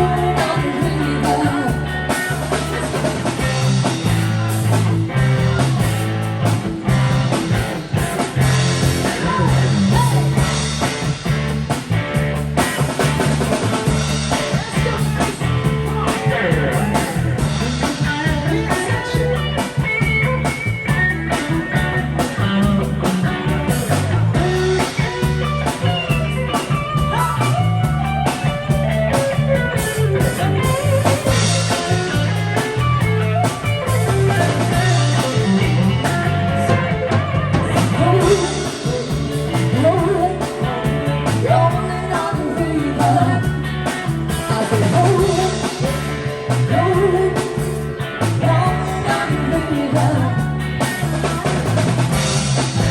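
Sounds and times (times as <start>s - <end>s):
person singing: 0.0s - 3.6s, 9.0s - 10.4s, 14.3s - 20.5s, 33.8s - 51.8s
rock band playing: 0.0s - 52.9s.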